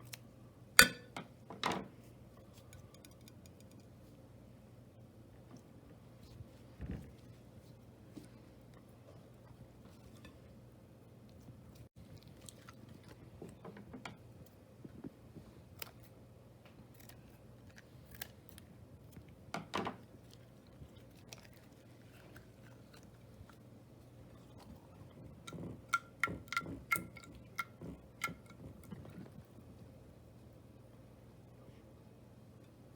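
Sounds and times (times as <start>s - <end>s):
low steady hum: 0.0s - 32.9s.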